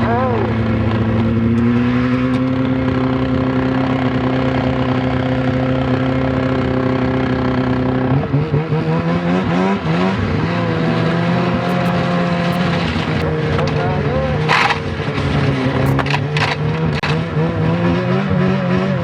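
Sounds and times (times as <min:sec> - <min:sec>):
snowmobile engine misfiring: 0:00.0 - 0:19.0.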